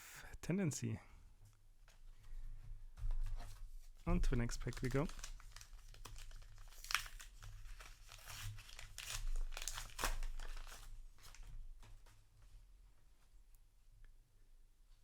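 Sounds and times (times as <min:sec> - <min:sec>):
card pack tearing and crinkling: 0:04.6 - 0:11.4.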